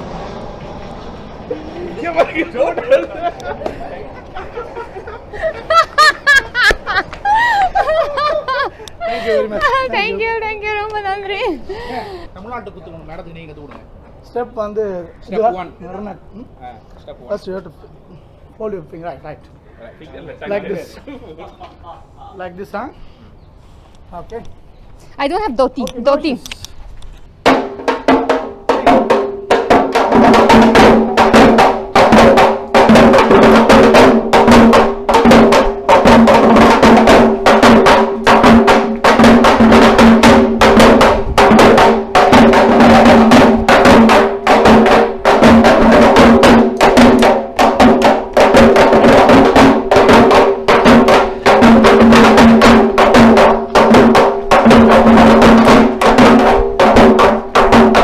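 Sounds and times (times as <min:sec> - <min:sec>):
frame drums beaten fast: 0:27.4 - 0:58.0.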